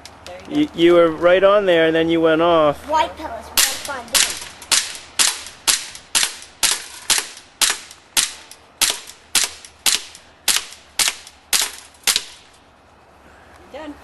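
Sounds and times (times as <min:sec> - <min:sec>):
airsoft pistol shots: 0:03.6 - 0:12.4.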